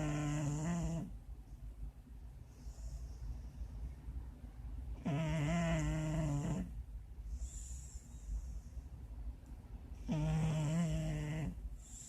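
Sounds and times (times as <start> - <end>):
dog snoring: 0.0 - 1.2, 5.0 - 6.8, 10.0 - 12.0
soft airy breath: 2.3 - 4.3, 7.1 - 9.4, 11.6 - 12.0.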